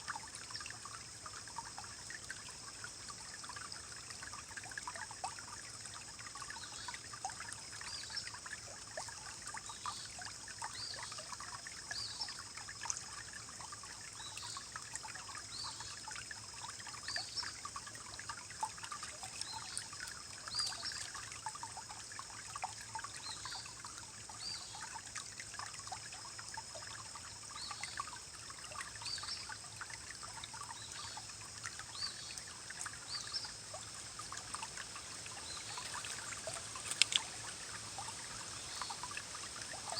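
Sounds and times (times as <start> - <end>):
forest stream over rocks: 0.0 - 39.9
water bubbling plinks: 32.6 - 39.9.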